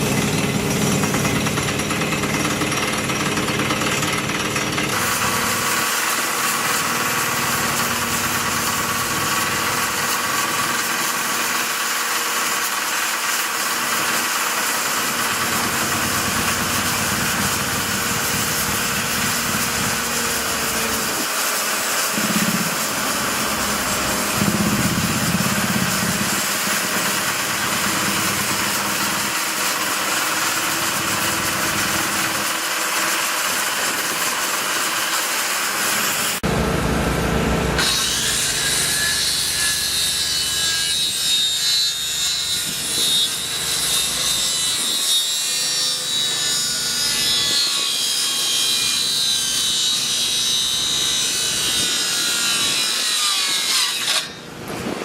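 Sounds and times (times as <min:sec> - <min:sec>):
power tool hiss: 0:15.8 - 0:36.4.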